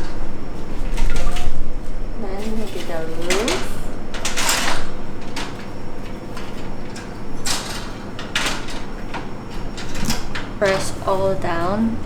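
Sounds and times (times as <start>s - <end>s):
cage panels scraping and rattling: 2.3s - 11.9s.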